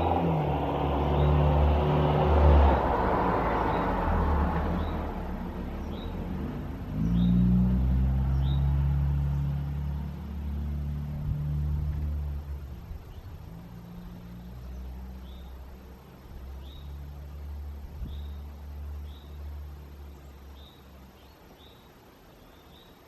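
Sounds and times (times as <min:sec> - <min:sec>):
vehicle engine rumbling: 0:00.0 - 0:22.1.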